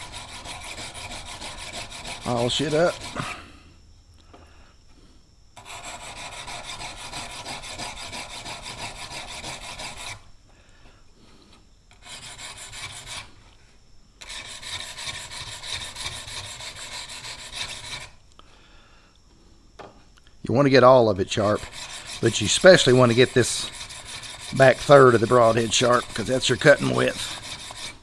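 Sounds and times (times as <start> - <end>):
blade scraping on sharpening stone: 21.5 - 28.0.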